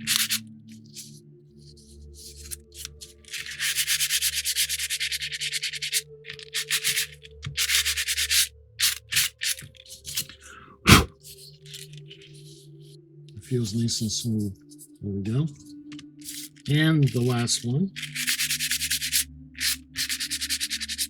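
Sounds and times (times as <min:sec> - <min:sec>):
hand-sanding wood: 0:00.0 - 0:00.4, 0:02.2 - 0:11.1, 0:16.2 - 0:21.0.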